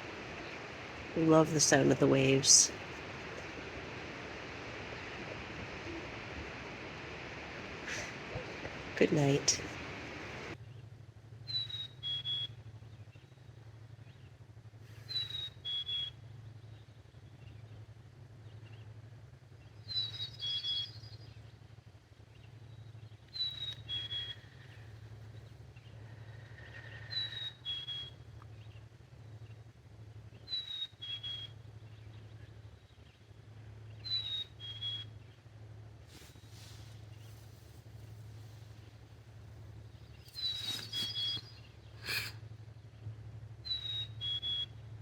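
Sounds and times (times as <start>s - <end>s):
steady low hum: 0.0s - 45.0s
nose whistling while breathing: 40.4s - 41.4s.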